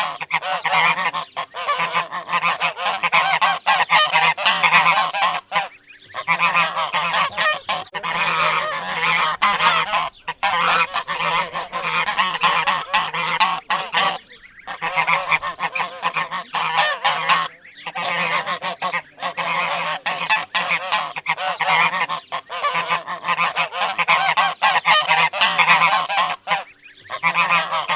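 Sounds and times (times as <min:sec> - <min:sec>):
geese honking: 0:00.0 - 0:27.9.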